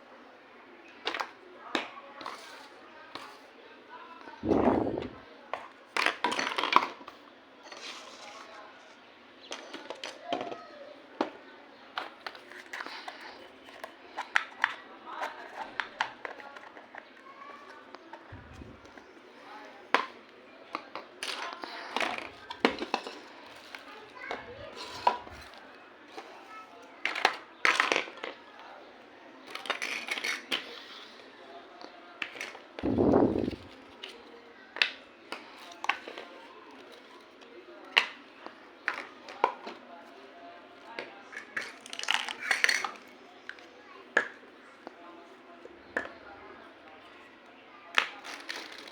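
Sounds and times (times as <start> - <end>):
plastic toy pieces clicking: 41.3 - 43.1.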